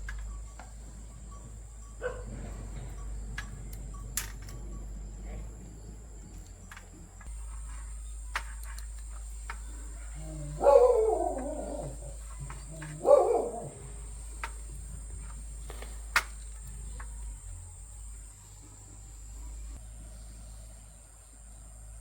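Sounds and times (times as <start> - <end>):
steady low hum: 0.0 - 22.0
loud animal calls: 4.6 - 17.8
sharp clicks: 6.3 - 10.0, 11.2 - 18.2.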